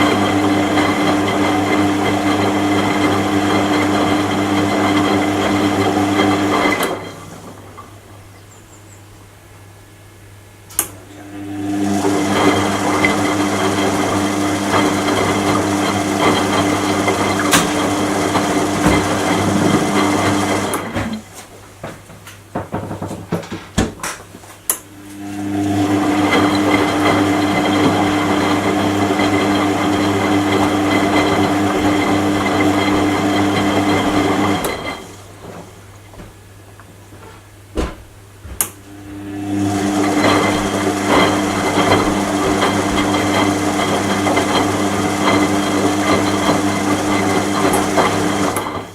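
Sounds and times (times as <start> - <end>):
washing machine motor humming: 0.0 - 48.9
washing machine clicks and knocks: 16.2 - 24.8, 37.7 - 38.8.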